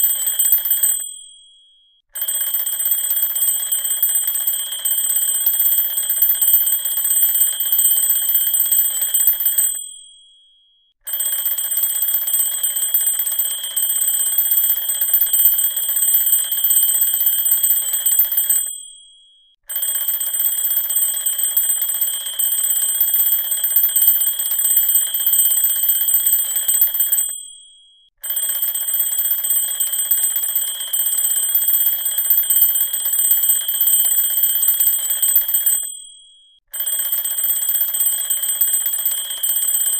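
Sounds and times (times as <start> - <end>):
alarm clock ringing: 2.2 - 10.2, 11.1 - 19.1, 19.8 - 39.9.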